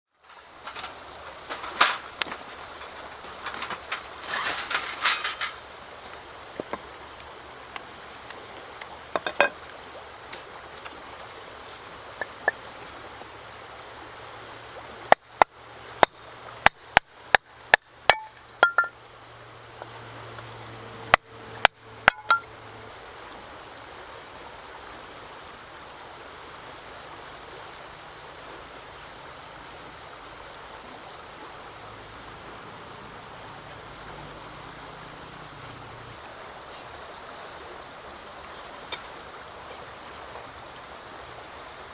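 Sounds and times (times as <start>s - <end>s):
sharp knocks and clinks: 9.1s - 9.6s, 12.2s - 12.7s, 17.8s - 19.0s, 21.6s - 22.5s.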